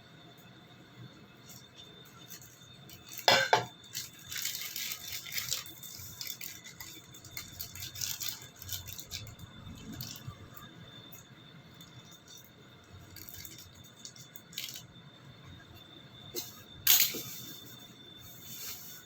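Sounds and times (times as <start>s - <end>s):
cutlery and dishes clinking: 3.2s - 3.7s.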